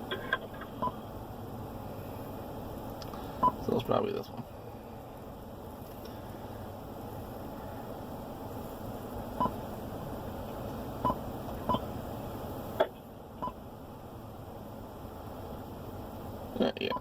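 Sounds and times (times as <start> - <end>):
steady background hiss: 0.0 - 17.0.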